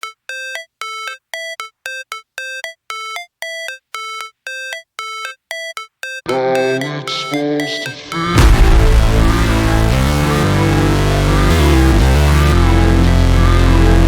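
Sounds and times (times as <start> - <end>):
synthesizer beeping riff: 0.0 - 14.0
electronic track with heavy bass: 6.2 - 14.0.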